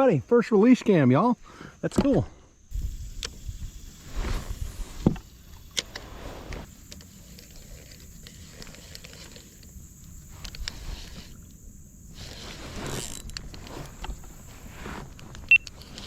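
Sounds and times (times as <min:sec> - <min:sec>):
wind rumble on microphone: 0:02.7 - 0:05.3.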